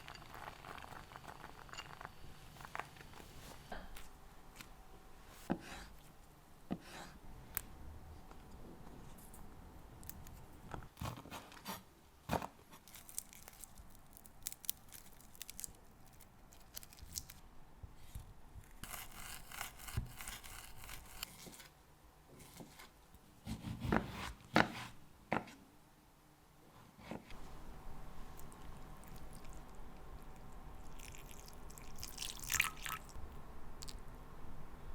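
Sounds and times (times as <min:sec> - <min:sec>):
tearing and crinkling: 0:12.7 - 0:17.4.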